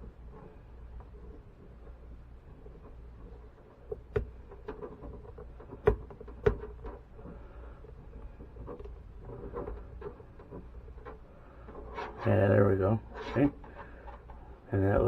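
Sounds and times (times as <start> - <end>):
rubber duct clicks and knocks: 2.8 - 7.4.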